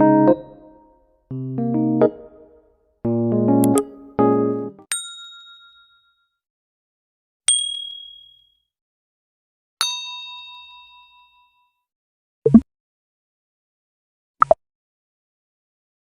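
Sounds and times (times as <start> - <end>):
bell-like ding: 4.9 - 6.4, 7.5 - 8.6, 9.8 - 11.8.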